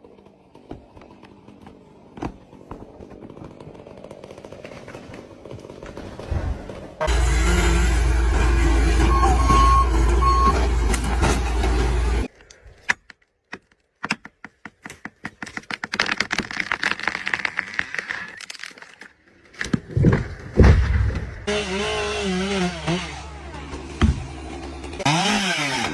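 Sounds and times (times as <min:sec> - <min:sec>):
heavy machine engine running: 0:06.2 - 0:12.3, 0:21.5 - 0:25.1
reversing alarm beeping: 0:08.8 - 0:10.8
sharp clicks and cracks: 0:12.3 - 0:20.2.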